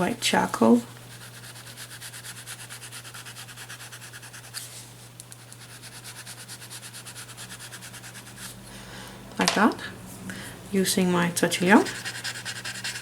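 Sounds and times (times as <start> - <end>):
pencil scratching on paper: 1.1 - 4.6, 5.4 - 8.5, 11.8 - 13.0.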